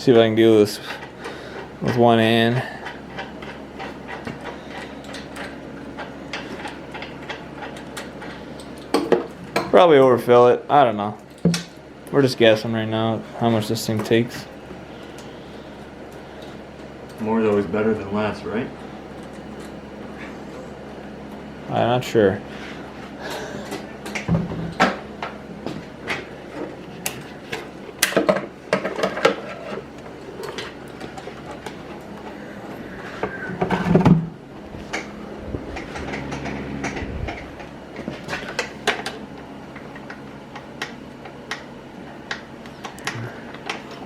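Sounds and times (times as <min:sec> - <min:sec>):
faint steady hum: 0:00.0 - 0:44.0
tools and parts clanking: 0:23.4 - 0:41.7.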